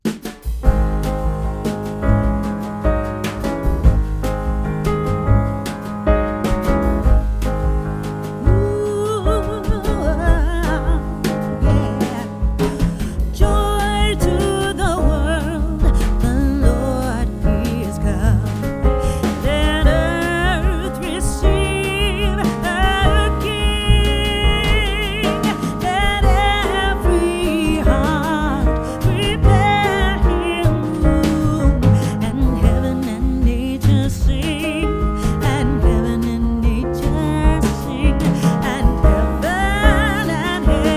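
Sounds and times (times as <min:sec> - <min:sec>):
music with steady beat: 0:00.0 - 0:40.9
person singing: 0:08.5 - 0:40.9.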